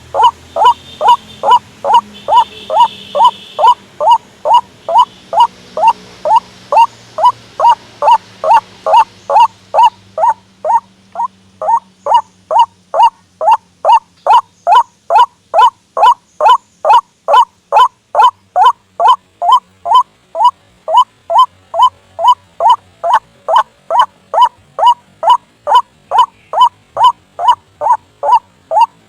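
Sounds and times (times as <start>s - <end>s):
bird croaking call: 0.0s - 29.0s.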